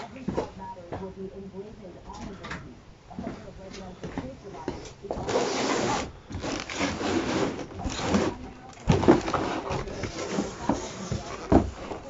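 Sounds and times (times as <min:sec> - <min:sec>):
packaging rustling and scraping: 0:04.8 - 0:12.0.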